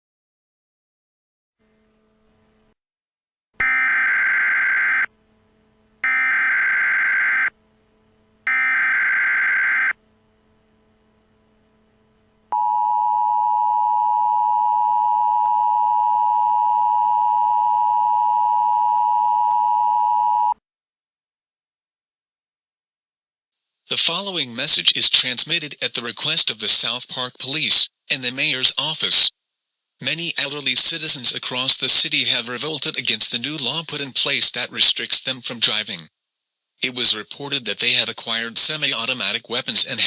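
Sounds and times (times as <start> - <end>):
two-tone attention signal: 12.5 - 20.6.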